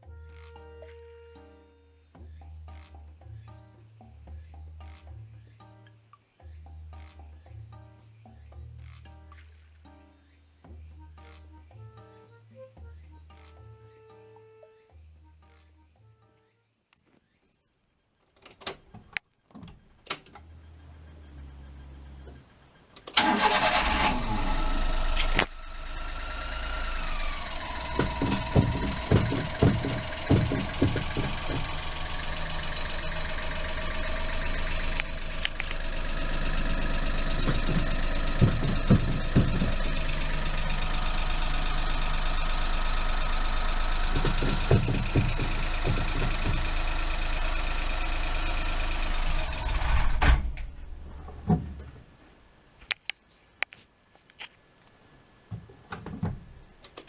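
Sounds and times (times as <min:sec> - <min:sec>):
engine idling: 0:20.4 - 0:51.9
engine starter cranking: 0:23.0 - 0:51.9
sharp knocks: 0:27.4 - 0:34.2, 0:35.0 - 0:40.6, 0:43.7 - 0:47.1.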